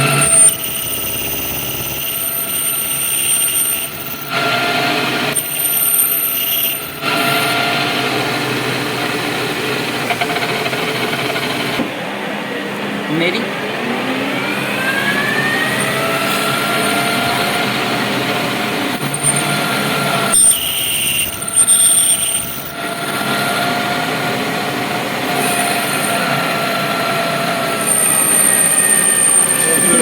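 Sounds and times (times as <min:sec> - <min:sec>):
high squeal: 0:00.0 - 0:07.6, 0:14.4 - 0:23.8, 0:25.3 - 0:30.0
metal lathe whine: 0:00.0 - 0:30.0.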